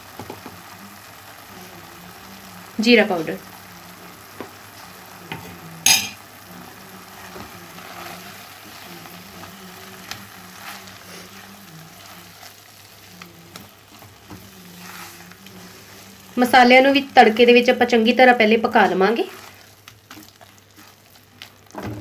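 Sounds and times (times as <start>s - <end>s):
food sizzling in a pan: 0.0s - 22.0s
spoon scraping a pan: 5.3s - 6.2s, 13.5s - 16.2s.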